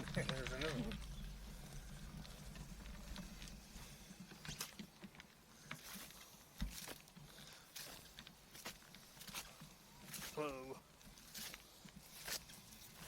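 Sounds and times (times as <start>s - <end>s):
small clicks and rattles: 0.0s - 6.0s
bicycle tyres crunching on dirt: 0.0s - 13.0s.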